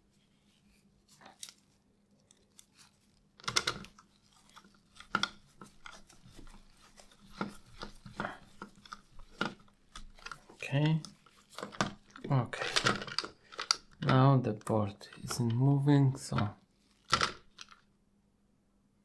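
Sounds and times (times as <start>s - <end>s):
screwdriver clicks and plastic scrapes: 2.3s - 15.6s.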